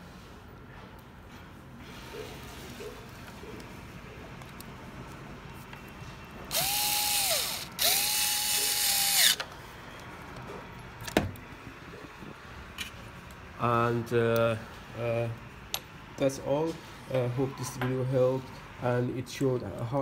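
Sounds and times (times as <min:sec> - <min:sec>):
electric screwdriver running: 0:06.5 - 0:09.4.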